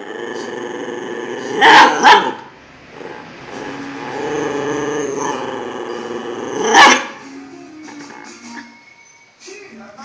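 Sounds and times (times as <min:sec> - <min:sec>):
dog growling: 0:00.0 - 0:07.0.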